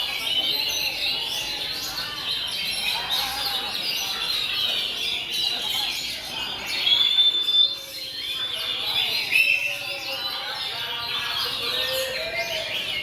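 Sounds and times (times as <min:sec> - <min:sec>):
chorus of birds singing: 0:00.0 - 0:13.0.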